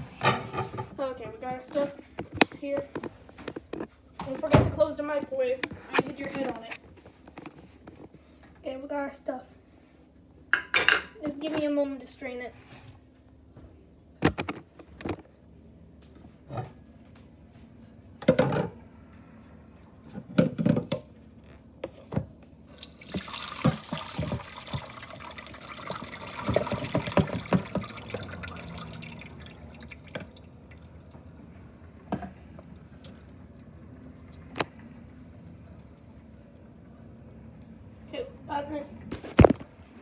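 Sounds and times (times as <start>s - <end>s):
water pouring into a sink: 22.7s - 31.3s
water dripping: 22.7s - 31.8s.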